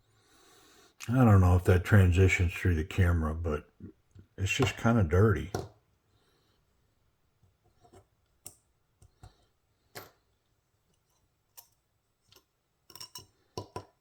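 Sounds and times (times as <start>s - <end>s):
small metal parts clicking: 12.9s - 13.8s.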